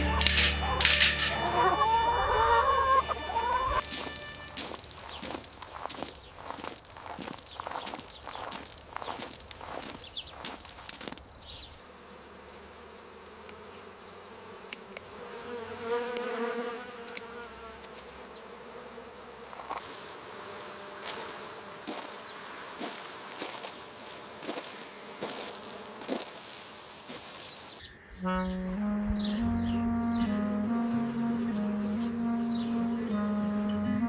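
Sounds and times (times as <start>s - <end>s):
faint outdoor background: 0.0s - 34.0s
flying insect buzzing: 0.0s - 34.0s
small ticks: 3.9s - 11.7s, 13.4s - 13.9s, 14.7s - 15.1s, 15.9s - 18.1s, 19.5s - 20.0s, 21.0s - 27.8s.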